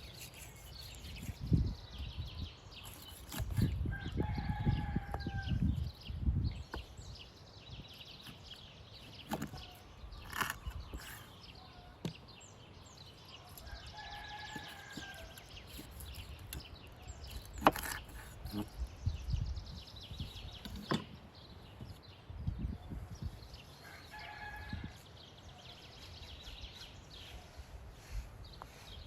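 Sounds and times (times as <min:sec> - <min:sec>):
small birds chirping: 0:00.0 - 0:29.0
rooster crowing: 0:03.9 - 0:05.6, 0:23.8 - 0:25.0.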